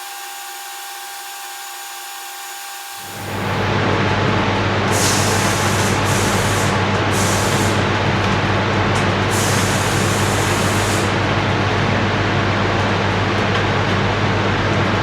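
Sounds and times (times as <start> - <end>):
machine drone with low hum: 3.0 - 15.0
spray gun hissing: 4.9 - 7.8, 9.3 - 11.2.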